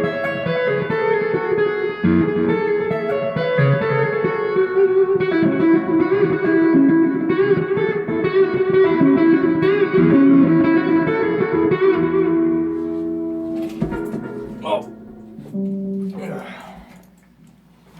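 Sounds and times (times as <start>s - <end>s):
electric guitar lead line: 0.0s - 17.2s.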